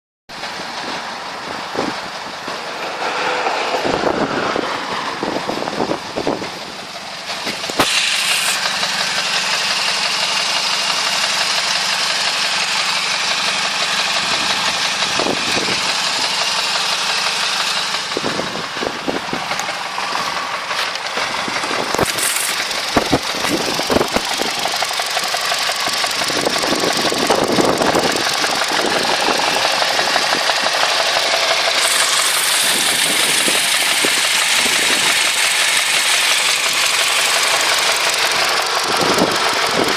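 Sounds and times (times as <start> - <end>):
car engine running with knock: 0.3 - 39.9.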